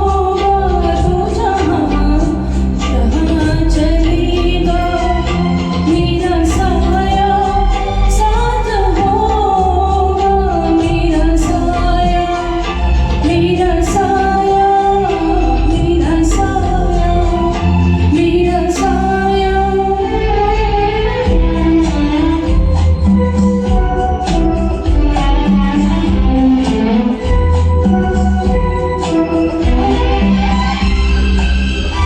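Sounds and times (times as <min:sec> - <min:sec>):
woman singing: 0:00.0 - 0:23.0
instrumental accompaniment with bass: 0:00.0 - 0:32.0
percussion beat: 0:00.0 - 0:32.0.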